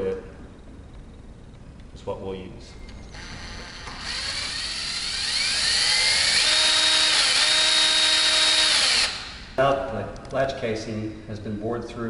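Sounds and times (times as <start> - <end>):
power drill whining: 3.1 - 9.5.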